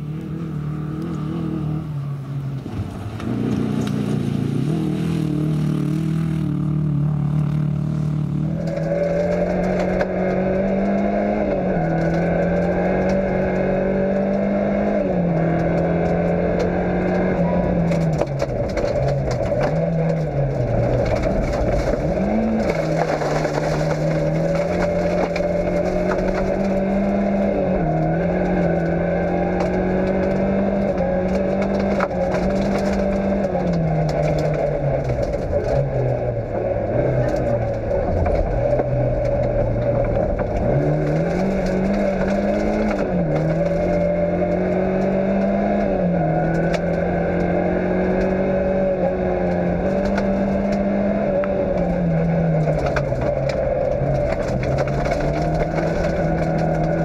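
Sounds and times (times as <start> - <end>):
rally car engine revving: 0.0 - 57.0
tyres crunching on loose surface: 17.8 - 45.8, 51.7 - 57.0.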